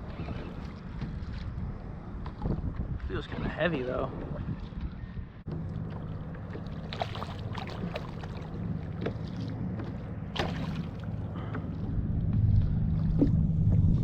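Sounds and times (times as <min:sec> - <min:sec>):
water knocking and splashing on hull: 0:00.2 - 0:03.1, 0:04.1 - 0:14.0
low rumble: 0:04.1 - 0:14.0.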